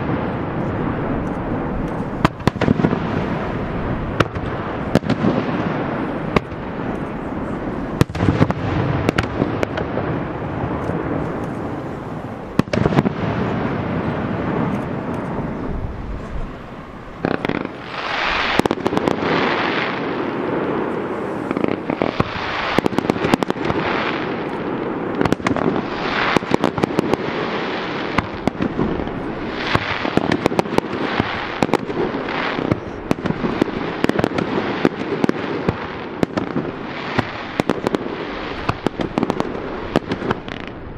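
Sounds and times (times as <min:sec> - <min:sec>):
fireworks bursting: 0:00.0 - 0:40.9.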